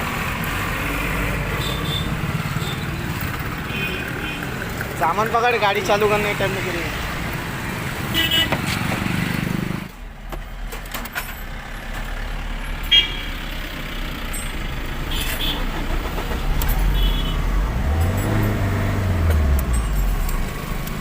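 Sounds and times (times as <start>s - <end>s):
car engine running and revving: 0.0s - 21.0s.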